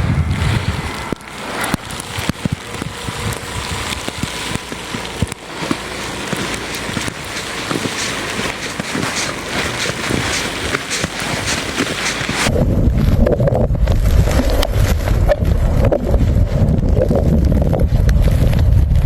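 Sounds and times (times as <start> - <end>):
wind rushing over microphone: 0.0 - 19.0.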